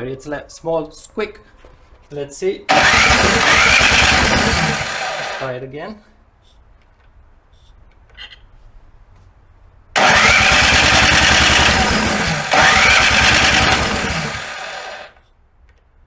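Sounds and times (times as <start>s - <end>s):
snow blower engine cranking: 2.7s - 5.5s, 10.0s - 15.2s.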